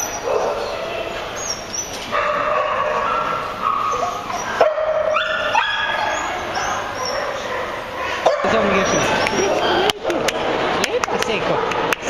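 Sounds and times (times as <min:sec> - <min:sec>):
dog yipping: 0:00.0 - 0:10.0.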